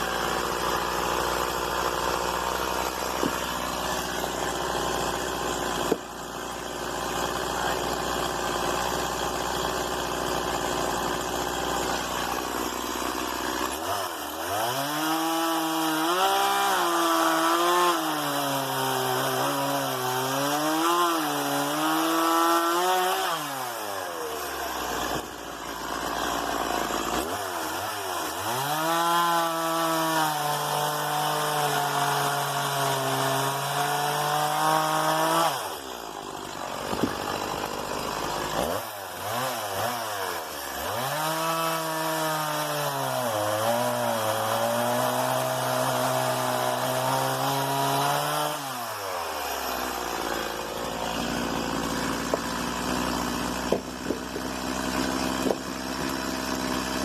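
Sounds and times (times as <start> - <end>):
chainsaw cutting wood: 0.0 - 57.0
chainsaw idling: 0.0 - 57.0.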